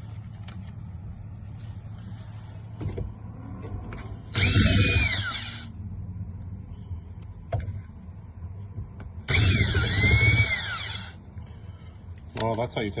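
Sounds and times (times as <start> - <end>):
low hum: 0.0 - 12.3
cordless drill motor whine: 4.3 - 5.7, 9.2 - 11.2.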